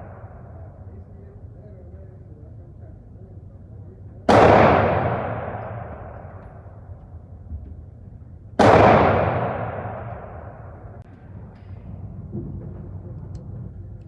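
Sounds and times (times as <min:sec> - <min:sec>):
rifle shot with rolling echo: 0:00.0 - 0:01.6, 0:04.2 - 0:13.9.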